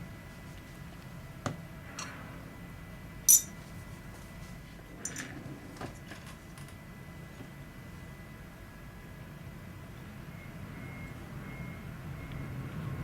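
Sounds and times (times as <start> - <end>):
small metal parts clinking: 3.3 - 3.6.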